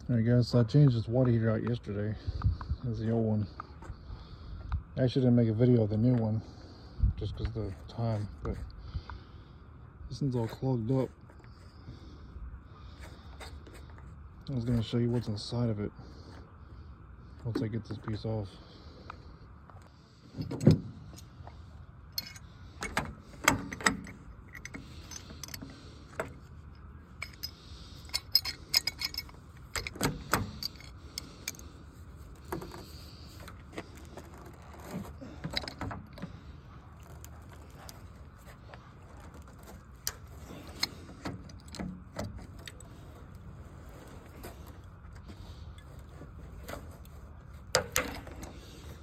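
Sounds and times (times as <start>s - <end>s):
metallic tool clinks and knocks: 22.2s - 25.7s, 27.2s - 31.6s.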